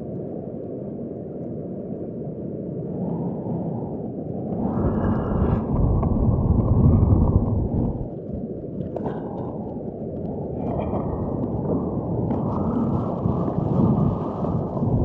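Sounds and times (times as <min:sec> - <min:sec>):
wind buffeting microphone: 0:03.8 - 0:15.0.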